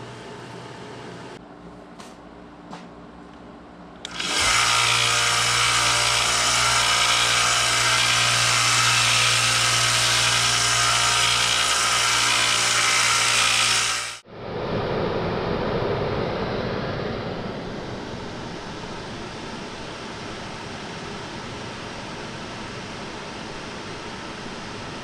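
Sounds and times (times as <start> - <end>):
electric power tool running: 4.0 - 14.2.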